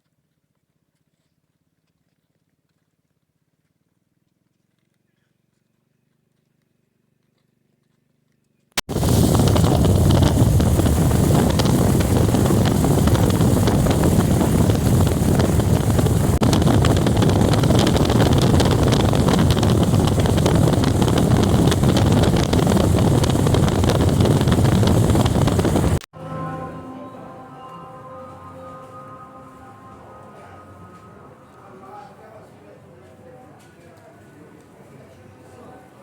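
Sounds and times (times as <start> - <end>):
loud rushing noise: 8.9 - 31.6.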